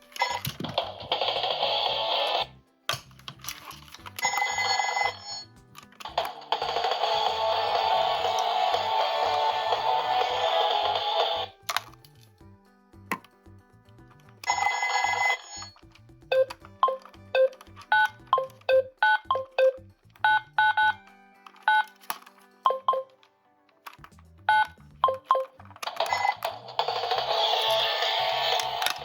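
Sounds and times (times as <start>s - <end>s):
short electronic beeping tones: 15.6s - 21.0s.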